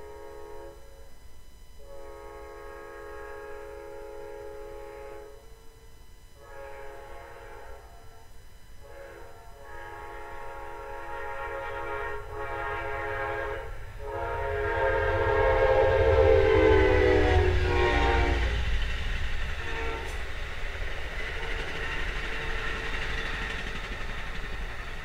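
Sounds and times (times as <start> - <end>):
train horn blasts: 0.0 - 1.2, 1.8 - 18.8, 19.5 - 20.4
passing train rumble: 6.4 - 25.0.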